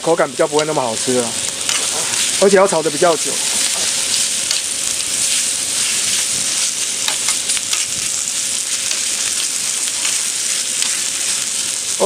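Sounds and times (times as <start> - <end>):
food sizzling on hot plate: 0.0 - 12.0
stirring clicks and scrapes: 1.6 - 2.4.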